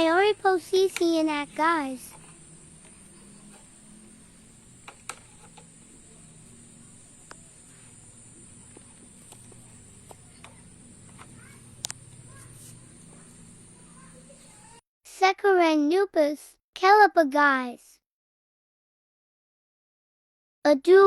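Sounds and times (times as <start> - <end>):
high-pitched insect buzz: 0.5 - 14.8.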